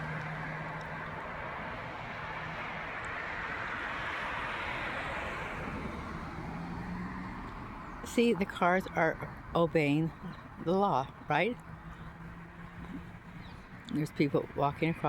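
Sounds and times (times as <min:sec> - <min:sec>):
low engine hum: 0:00.0 - 0:15.0
road traffic noise: 0:00.0 - 0:15.0.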